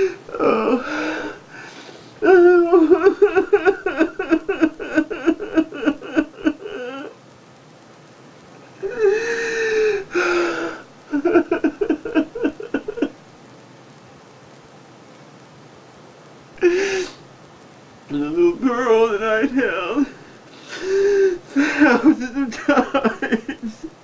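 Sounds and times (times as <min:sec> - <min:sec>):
man wailing: 0:00.0 - 0:01.4, 0:02.2 - 0:07.2, 0:18.1 - 0:20.2, 0:20.8 - 0:23.8
man sobbing: 0:00.0 - 0:07.2, 0:08.8 - 0:13.2, 0:16.6 - 0:17.2, 0:18.1 - 0:24.0.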